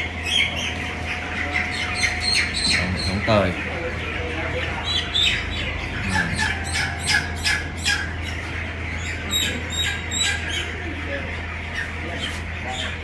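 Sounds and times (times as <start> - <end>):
chicks peeping and squawking: 0.0 - 13.0
low hum: 5.4 - 9.7.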